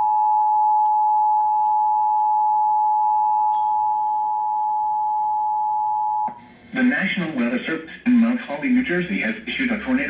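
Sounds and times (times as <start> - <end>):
two-tone alarm: 0.0 - 6.4.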